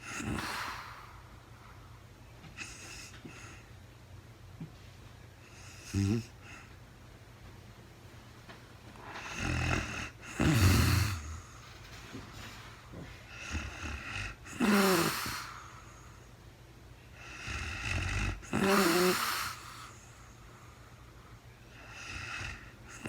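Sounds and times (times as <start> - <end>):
woman snoring: 0.0 - 1.2, 5.5 - 6.7, 9.0 - 12.2, 13.3 - 16.0, 17.2 - 20.2, 21.7 - 23.0.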